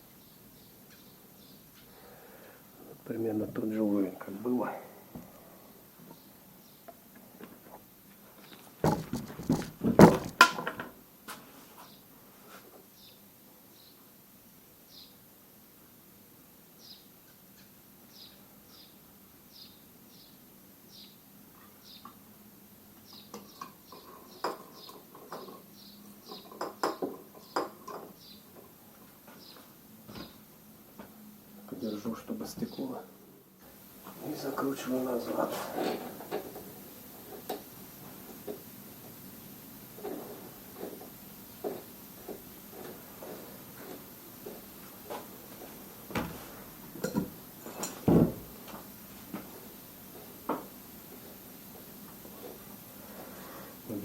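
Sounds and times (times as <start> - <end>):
small bird chirping: 0.1 - 2.0, 14.9 - 15.2, 16.8 - 22.2, 23.0 - 26.6, 27.4 - 28.5.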